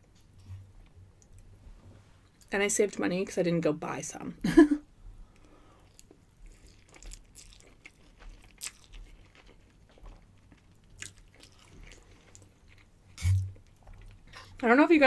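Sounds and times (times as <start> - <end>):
person chewing pasta: 5.3 - 14.6.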